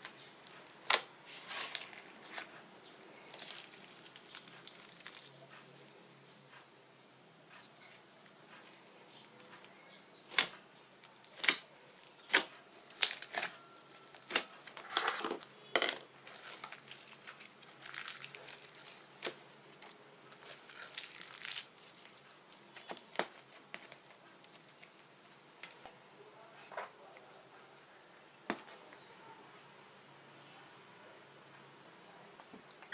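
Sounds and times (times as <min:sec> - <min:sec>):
slime popping and crackling: 0:00.5 - 0:02.0, 0:10.3 - 0:14.5, 0:16.2 - 0:19.3, 0:20.4 - 0:23.6.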